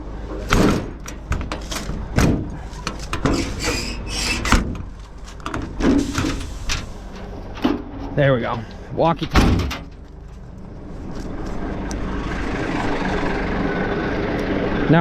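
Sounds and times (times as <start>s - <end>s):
knocks and clunks: 0.0s - 8.2s, 9.2s - 10.2s.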